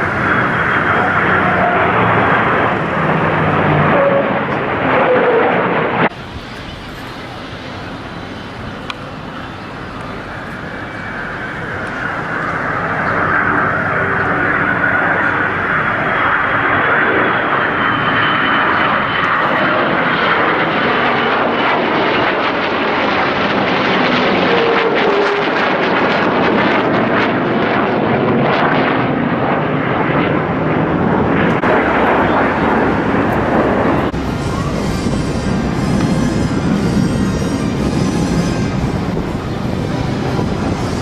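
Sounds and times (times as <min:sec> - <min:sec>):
airplane engine: 0:00.0 - 0:41.0
faint high whine: 0:06.1 - 0:19.7, 0:31.6 - 0:41.0.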